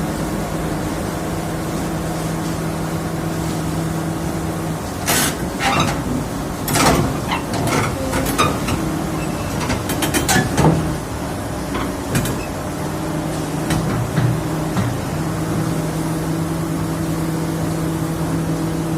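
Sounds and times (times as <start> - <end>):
diesel engine running: 0.0 - 18.9
metallic clanks and knocks: 5.6 - 10.9.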